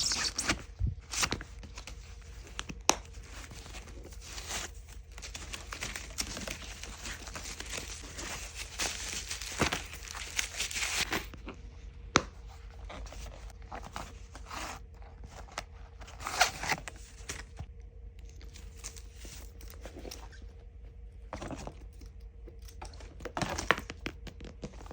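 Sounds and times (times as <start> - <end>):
packaging crinkling and tearing: 0.0 - 11.4.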